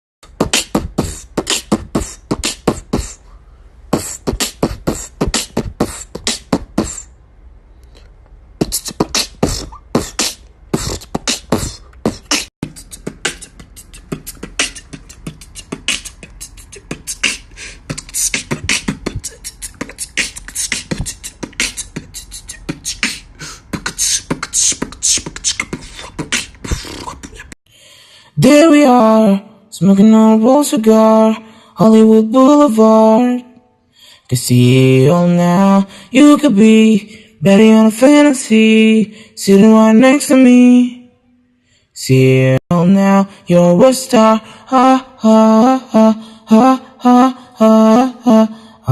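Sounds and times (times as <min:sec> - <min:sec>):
person beatboxing: 0:00.2 - 0:03.3, 0:03.9 - 0:07.1, 0:08.6 - 0:27.6.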